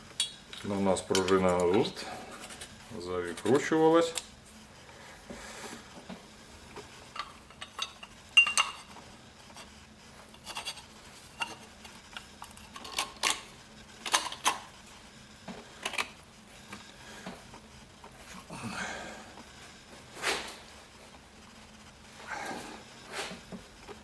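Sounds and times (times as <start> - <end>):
metal parts clicking and clinking: 0.2 - 1.9, 7.1 - 9.0, 10.3 - 14.6.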